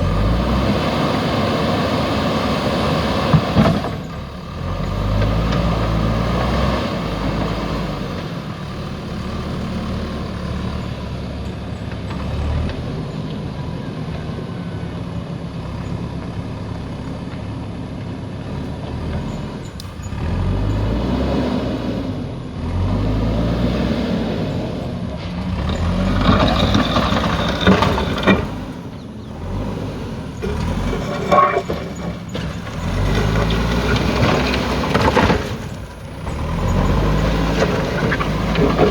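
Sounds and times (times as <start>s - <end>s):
diesel engine revving: 0.0s - 14.5s, 18.4s - 38.9s
metallic clanks and rattles: 25.6s - 29.0s, 30.4s - 36.4s, 37.5s - 38.9s.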